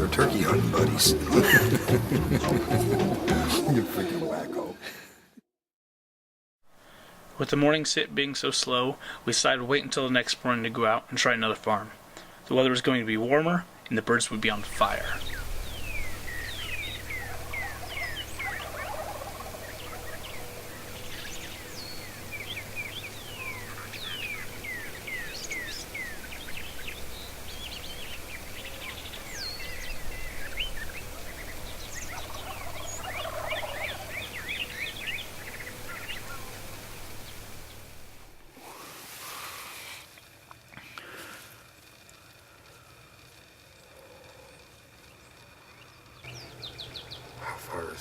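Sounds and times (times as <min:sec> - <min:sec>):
songbirds chirping: 0:00.0 - 0:04.8, 0:06.7 - 0:38.8, 0:40.2 - 0:48.0
steady low hum: 0:06.8 - 0:48.0
distant turkeys gobbling: 0:13.3 - 0:38.3.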